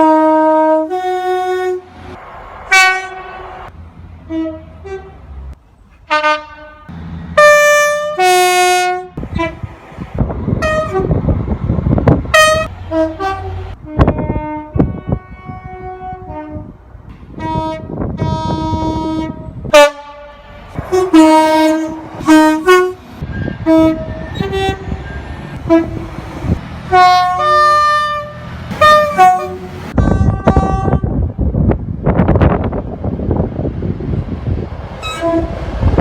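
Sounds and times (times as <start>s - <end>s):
train horn blasts: 0.0s - 3.7s, 4.3s - 5.3s, 6.1s - 9.8s, 10.6s - 11.2s, 12.3s - 31.4s, 35.0s - 35.7s
rail traffic rumble: 0.0s - 36.0s.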